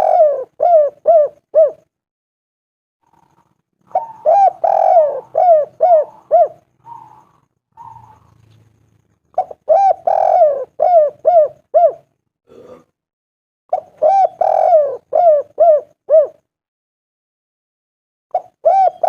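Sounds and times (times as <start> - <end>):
dove cooing: 0.0 - 1.9, 3.0 - 8.7, 9.3 - 12.2, 13.7 - 16.5, 18.3 - 19.0.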